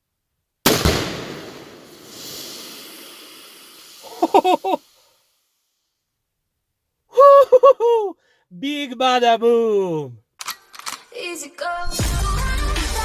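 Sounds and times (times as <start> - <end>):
person shouting: 4.1 - 4.8, 7.2 - 10.2.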